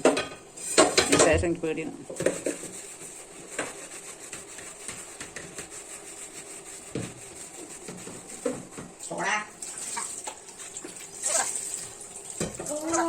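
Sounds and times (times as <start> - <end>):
fish sizzling in hot oil: 9.6 - 13.0.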